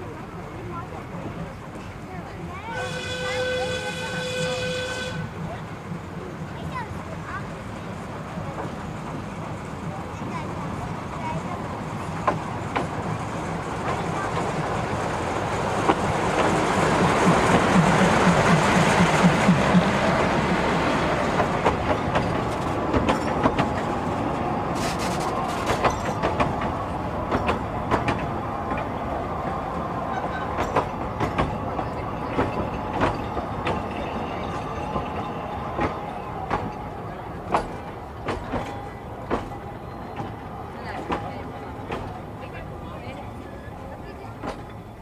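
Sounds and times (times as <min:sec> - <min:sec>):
train rumbling: 0:00.0 - 0:45.0
wheels clicking over rails: 0:11.9 - 0:45.0.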